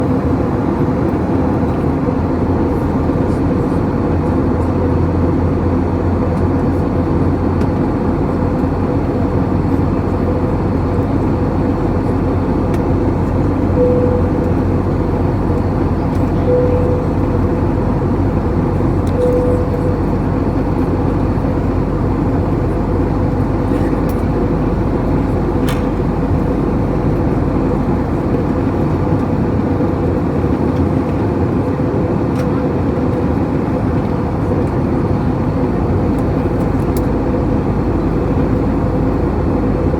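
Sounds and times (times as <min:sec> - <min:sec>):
jet engines rushing: 0:05.6 - 0:39.6
low hum: 0:11.8 - 0:28.2
steady tone: 0:13.7 - 0:20.9.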